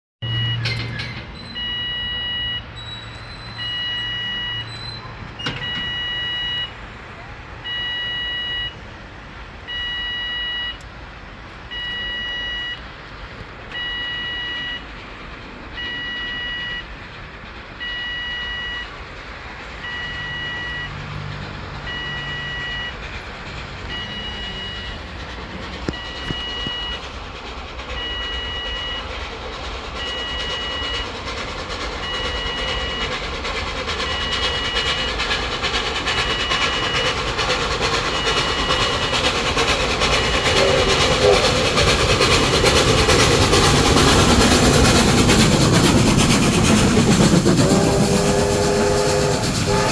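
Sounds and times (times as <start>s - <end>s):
two-tone warning beeps: 0.2s - 6.8s, 7.6s - 8.8s, 9.7s - 10.9s, 11.7s - 12.8s, 13.7s - 14.9s, 15.8s - 17.0s, 17.8s - 19.0s, 19.8s - 21.0s, 21.8s - 23.0s, 23.9s - 25.1s, 25.9s - 27.0s, 28.0s - 29.1s, 30.0s - 31.0s, 32.0s - 33.2s, 34.0s - 35.2s, 36.1s - 43.7s
steam train rushing: 0.2s - 49.9s.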